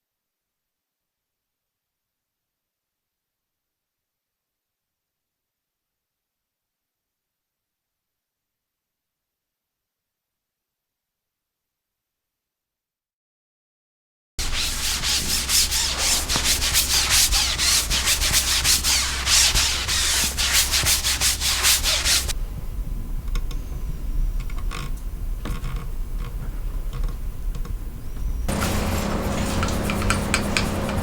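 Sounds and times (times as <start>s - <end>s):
hand rubbing strokes on surface: 14.4s - 22.3s, 28.5s - 31.0s.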